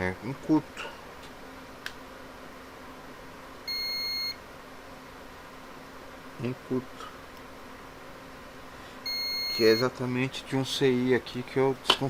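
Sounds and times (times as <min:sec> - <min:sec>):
steady low hum: 0:00.0 - 0:12.0
multimeter continuity beep: 0:03.6 - 0:04.4, 0:09.0 - 0:10.0.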